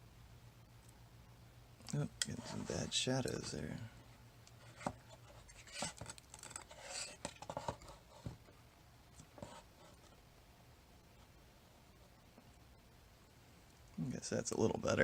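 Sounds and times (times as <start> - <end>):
light scrapes and clicks of handling: 1.8 - 3.8.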